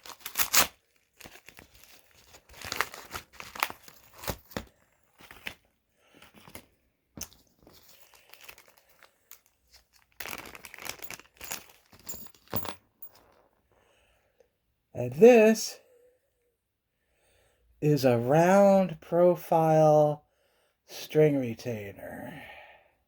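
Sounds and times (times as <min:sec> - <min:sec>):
packaging tearing and crinkling: 0:00.0 - 0:05.7, 0:07.6 - 0:12.0.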